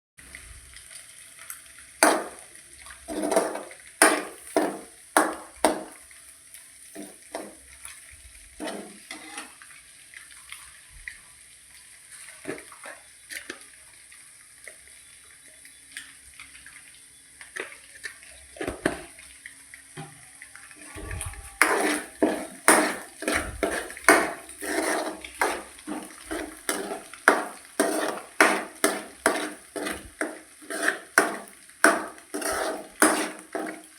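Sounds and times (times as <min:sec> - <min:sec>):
metal utensil clinking on cookware: 0:21.6 - 0:33.9.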